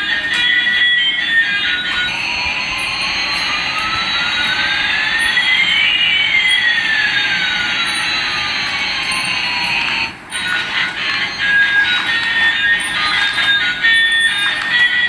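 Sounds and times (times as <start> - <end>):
whining engine tones: 0.0 - 15.0.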